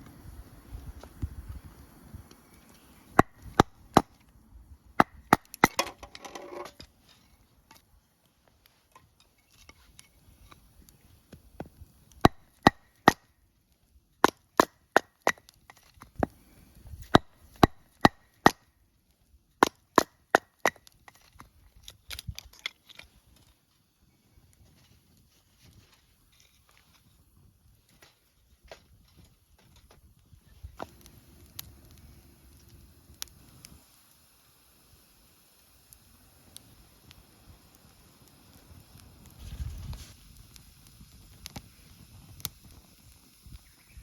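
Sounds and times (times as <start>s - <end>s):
hatchet chopping wood: 3.2s - 4.2s, 5.0s - 6.6s, 12.2s - 13.3s, 14.2s - 16.3s, 17.1s - 18.7s, 19.6s - 21.3s
wood splintering crackle: 5.0s - 34.2s.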